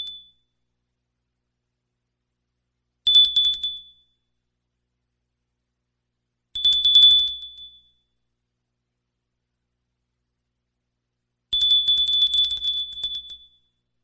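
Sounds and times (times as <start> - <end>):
small bell ringing: 0.0 - 0.5, 6.6 - 8.1, 11.6 - 13.8.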